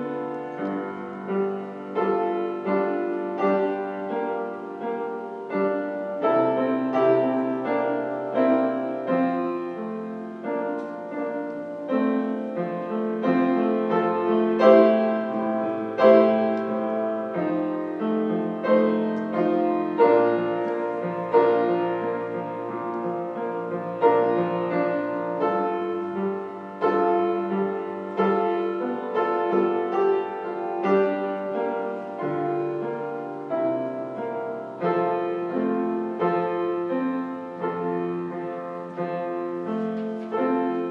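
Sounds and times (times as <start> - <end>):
slow solo piano chords: 0.0 - 40.9.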